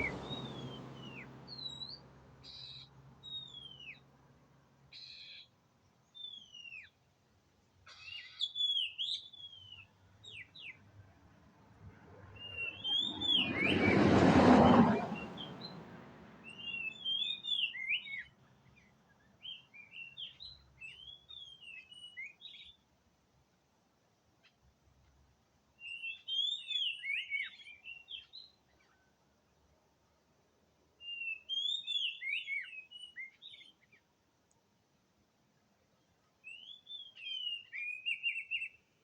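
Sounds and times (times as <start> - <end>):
bird singing whistled notes: 0.0 - 4.0, 6.1 - 7.0, 7.9 - 10.8, 12.4 - 14.0, 16.4 - 18.4, 19.4 - 22.8, 25.8 - 29.1, 31.0 - 34.0, 36.4 - 39.0.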